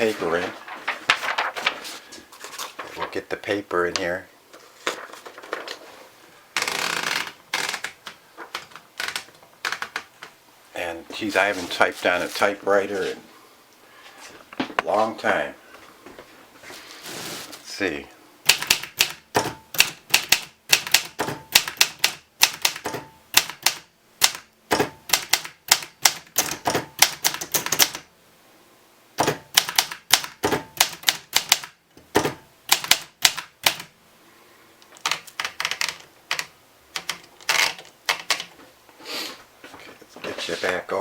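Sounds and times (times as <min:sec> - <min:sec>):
manual typewriter keys clacking: 0:06.6 - 0:10.3, 0:18.5 - 0:28.0, 0:29.2 - 0:33.9, 0:35.0 - 0:38.6.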